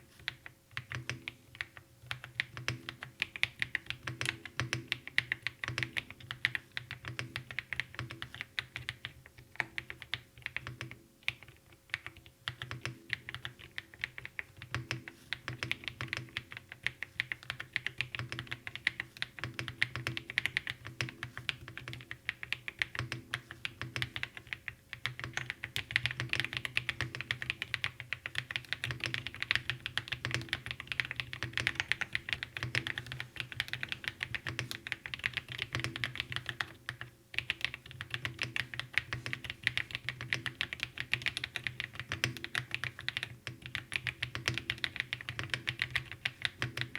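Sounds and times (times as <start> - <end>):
fast keyboard typing clicks: 0.2 - 46.9.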